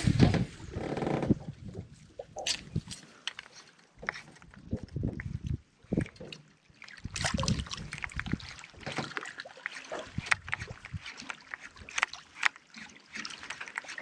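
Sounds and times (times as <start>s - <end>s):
water slapping against boat: 4.0s - 14.0s.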